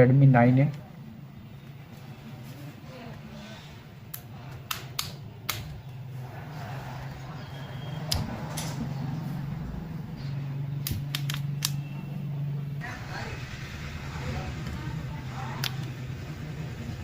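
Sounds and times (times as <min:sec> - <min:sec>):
low hum: 0:06.2 - 0:17.0.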